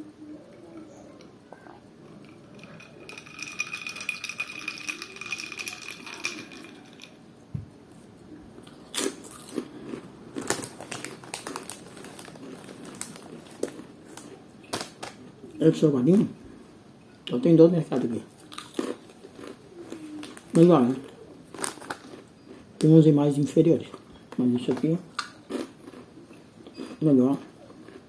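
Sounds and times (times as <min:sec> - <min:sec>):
snack bag crackling: 0:08.7 - 0:15.2, 0:21.5 - 0:22.2.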